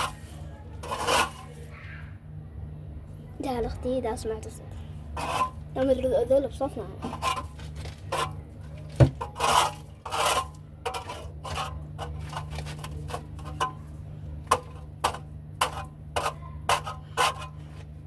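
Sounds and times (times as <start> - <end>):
hand scraping dirt: 0.0 - 1.7, 5.1 - 5.7, 7.0 - 13.8, 14.5 - 18.0.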